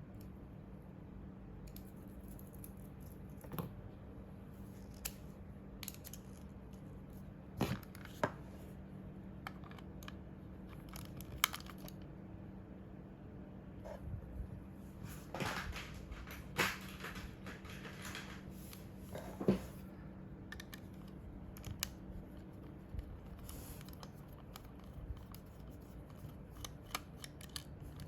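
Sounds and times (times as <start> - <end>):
steady low hum: 0.0 - 28.0
plastic mouse parts clicking: 23.3 - 28.0.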